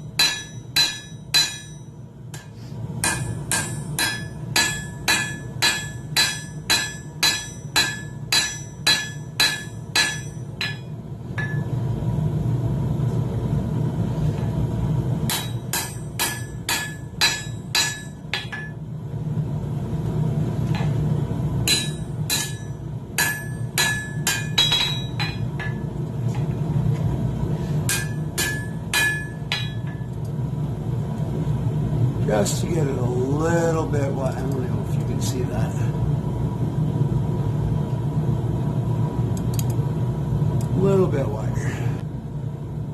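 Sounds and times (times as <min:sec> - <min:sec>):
steady low rumble: 0:00.0 - 0:42.9
hammer striking steel on anvil: 0:00.1 - 0:11.8, 0:15.3 - 0:18.8, 0:21.6 - 0:25.9, 0:27.8 - 0:30.1.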